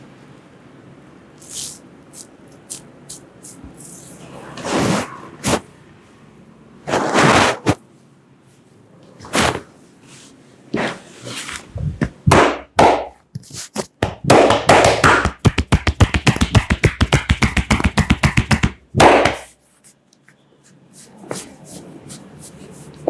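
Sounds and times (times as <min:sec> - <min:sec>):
fast chopping massage strikes: 0:11.9 - 0:13.2, 0:13.9 - 0:19.5
hands slapping body: 0:12.0 - 0:19.5.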